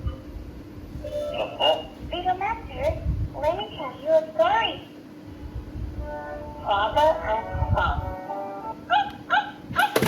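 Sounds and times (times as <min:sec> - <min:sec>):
recorded yapping barks: 0:08.9 - 0:10.0.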